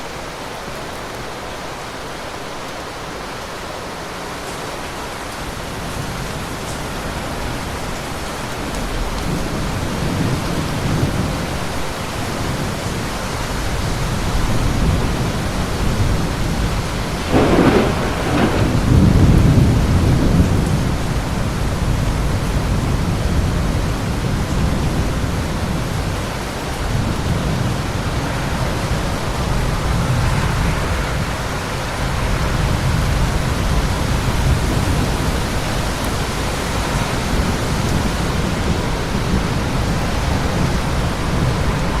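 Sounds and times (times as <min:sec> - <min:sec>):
steady rain: 0:00.0 - 0:42.0
low rumbling thunder: 0:14.3 - 0:26.1
thunderclap: 0:16.0 - 0:21.0.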